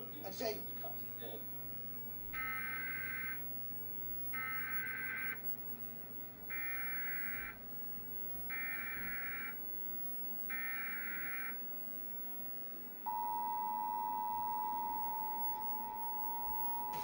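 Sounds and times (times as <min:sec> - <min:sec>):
two-tone attention signal: 0:13.1 - 0:17.0.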